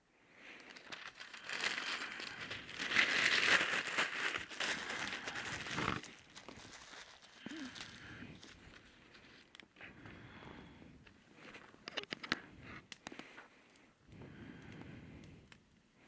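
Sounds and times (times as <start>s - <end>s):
newspaper crumpling: 0.4s - 9.5s.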